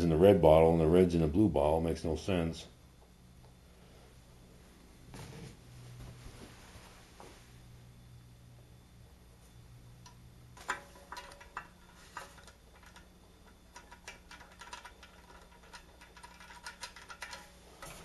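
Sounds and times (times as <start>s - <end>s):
faint low hum: 0.0s - 18.0s
small hardware clicking and tapping: 10.0s - 18.0s.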